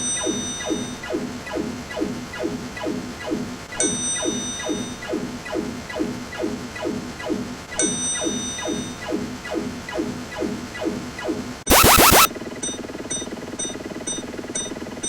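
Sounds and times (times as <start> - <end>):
electronic zap falling in pitch: 0.0 - 6.1, 10.4 - 12.3.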